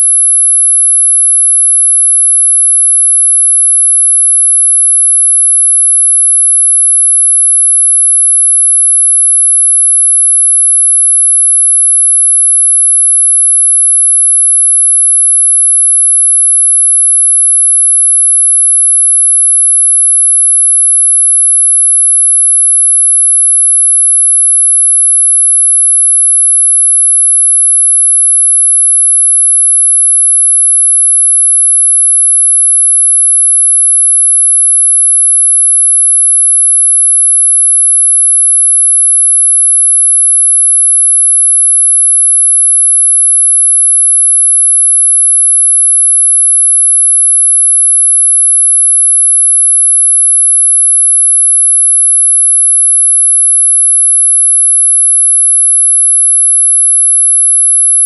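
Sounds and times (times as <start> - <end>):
high-pitched electronic sine tone: 0.0 - 3.1.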